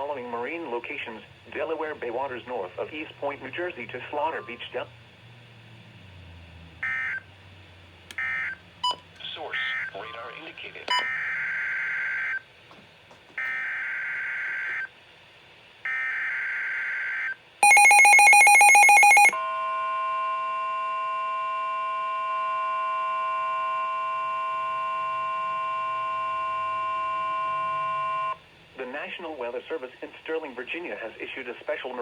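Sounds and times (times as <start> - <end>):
steady warning alarm tone: 15.9 - 28.4
harsh buzzing beep: 17.6 - 19.8.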